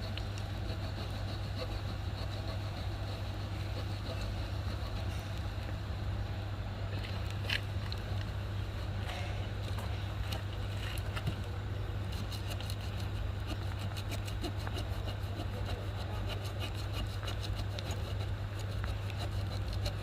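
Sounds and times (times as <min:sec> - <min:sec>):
saw blade cutting wood: 0:12.1 - 0:20.0.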